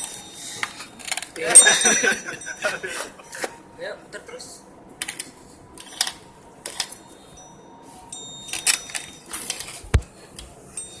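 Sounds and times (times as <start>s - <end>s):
metal parts clinking: 8.3s - 9.9s.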